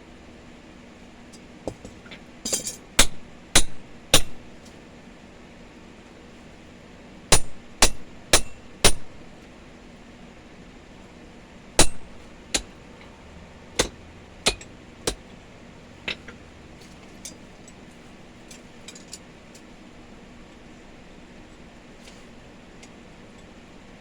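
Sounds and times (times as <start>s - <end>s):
hammer striking steel punch: 2.5s - 4.6s, 7.3s - 9.2s, 11.8s - 12.8s, 13.8s - 15.3s
faint light clinks of steel: 16.0s - 19.7s.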